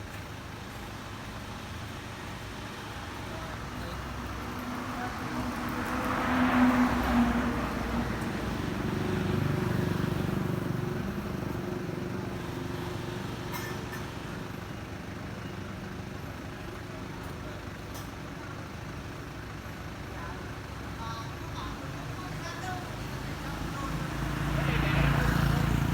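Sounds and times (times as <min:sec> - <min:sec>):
vehicle engine humming: 0:00.0 - 0:25.9.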